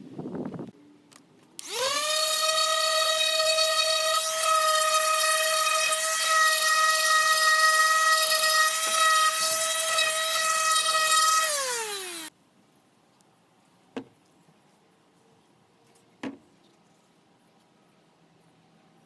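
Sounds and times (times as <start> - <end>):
power tool motor whining: 1.6 - 12.3.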